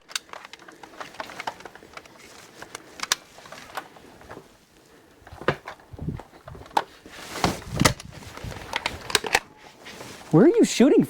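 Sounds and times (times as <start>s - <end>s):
clicks and knocks of handling: 0.0s - 10.1s.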